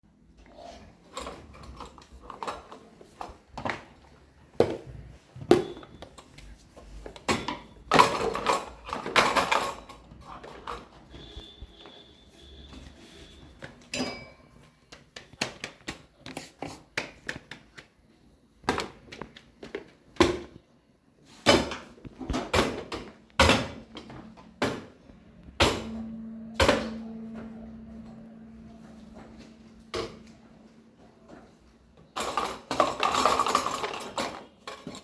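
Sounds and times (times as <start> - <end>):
low steady hum: 23.2 - 33.9.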